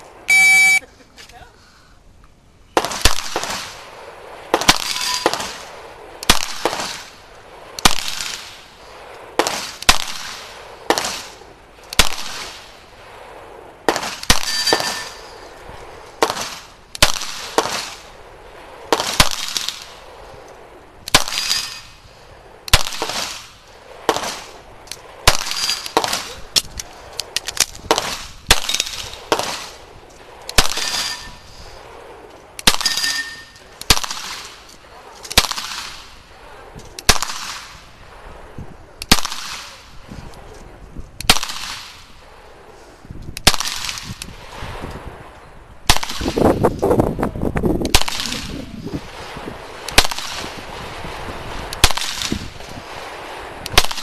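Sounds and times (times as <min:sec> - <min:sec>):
metallic ring: 0:14.5 - 0:15.5, 0:30.8 - 0:31.5, 0:32.8 - 0:33.6
pistol shots: 0:32.6 - 0:34.5, 0:47.9 - 0:48.5.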